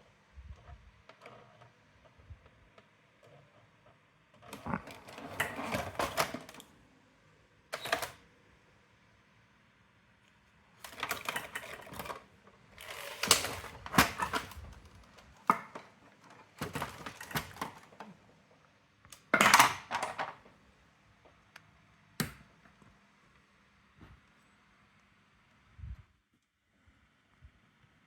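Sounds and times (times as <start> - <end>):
typewriter mechanism clicking: 7.8 - 8.2.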